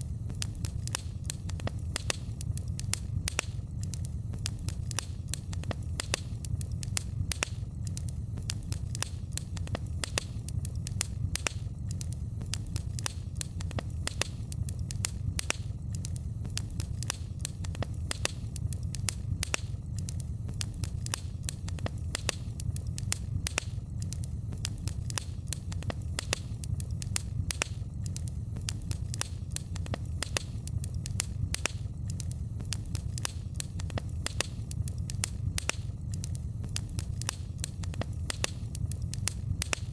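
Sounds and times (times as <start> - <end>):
fire crackling and popping: 0.0 - 39.9
low steady rumble: 0.0 - 39.9.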